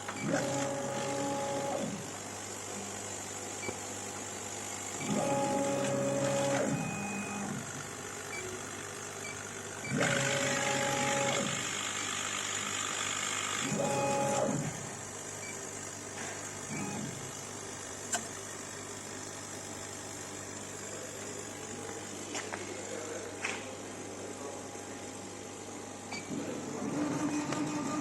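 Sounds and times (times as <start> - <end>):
fans humming: 13.7 - 28.0.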